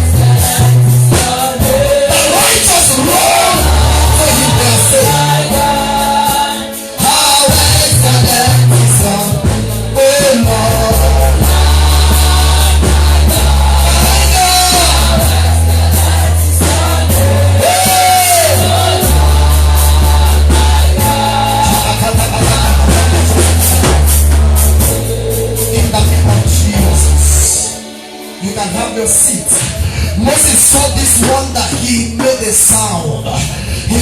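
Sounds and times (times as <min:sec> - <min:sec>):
voices singing: 0:00.0 - 0:24.1
drum kit: 0:00.0 - 0:34.0
heavy bass line: 0:00.0 - 0:34.0.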